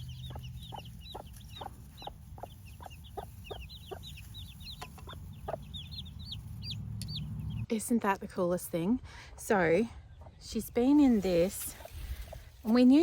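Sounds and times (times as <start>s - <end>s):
hen clucking: 0.0s - 7.6s
chicks peeping: 0.0s - 7.7s.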